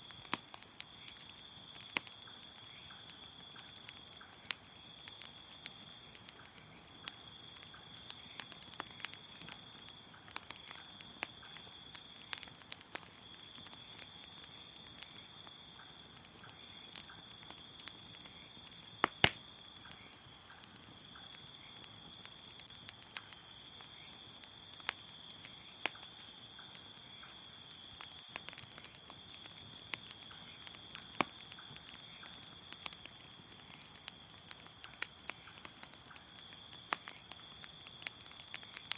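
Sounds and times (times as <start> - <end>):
bonfire crackling and popping: 0.0 - 38.9
crickets chirping: 0.0 - 38.9.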